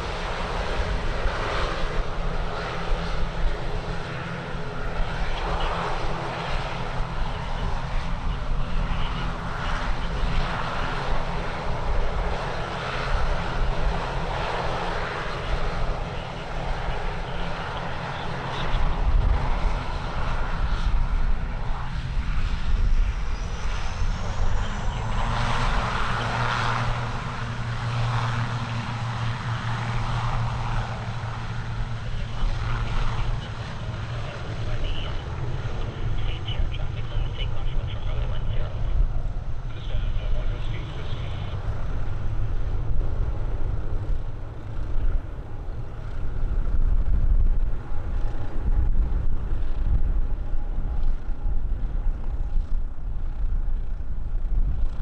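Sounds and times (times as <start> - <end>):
aircraft engines droning: 0.0 - 55.0
wind rumble on microphone: 0.0 - 55.0.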